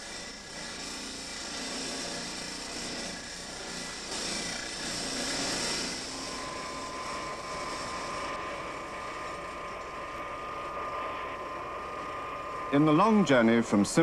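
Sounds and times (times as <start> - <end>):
jet engine running: 3.9 - 14.0.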